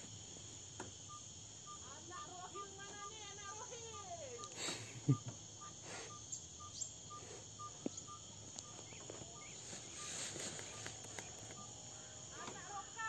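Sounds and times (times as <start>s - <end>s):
insects chirring: 0.0s - 13.0s.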